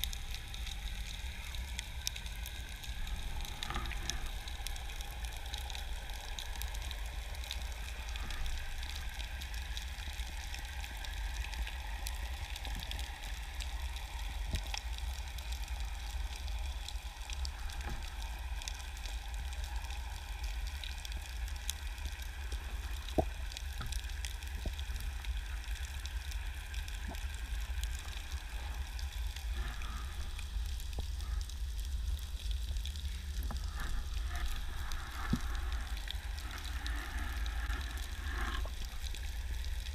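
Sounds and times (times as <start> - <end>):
fine crackling underwater: 0.0 - 39.9
low rumble of moving water: 0.0 - 39.9
sharp clicks underwater: 22.2 - 39.6.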